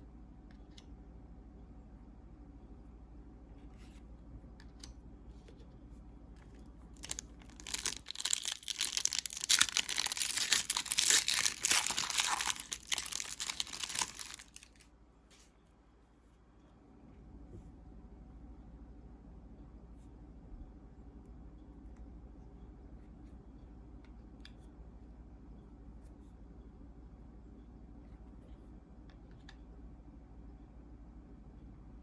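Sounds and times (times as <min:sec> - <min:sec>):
wrapper tearing and crinkling: 0:07.0 - 0:14.8.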